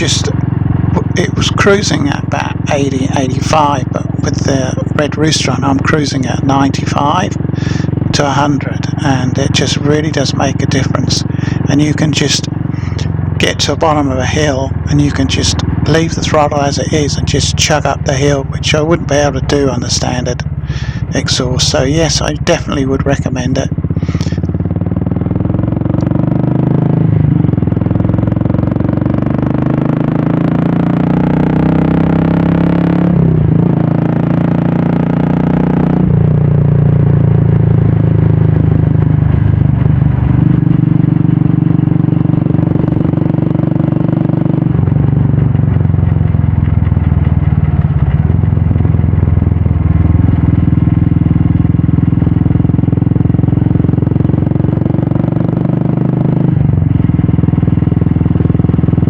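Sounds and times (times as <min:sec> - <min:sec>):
motorcycle engine revving: 0:00.0 - 0:59.0.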